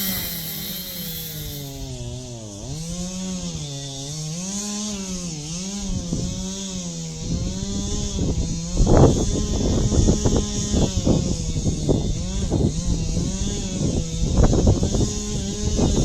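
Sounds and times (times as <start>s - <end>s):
chainsaw cutting wood: 0.0s - 4.8s.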